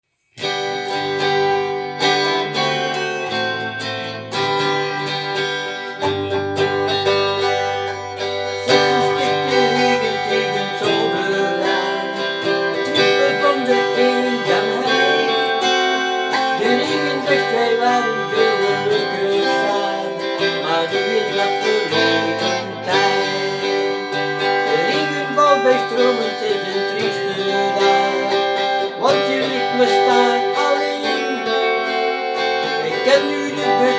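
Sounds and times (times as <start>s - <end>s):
guitar chords: 0.3s - 33.9s
held bass notes: 0.6s - 25.7s.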